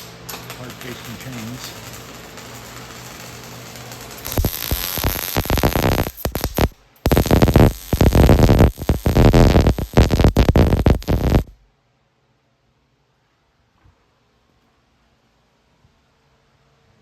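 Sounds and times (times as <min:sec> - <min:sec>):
welding arc crackling: 0:00.0 - 0:11.6.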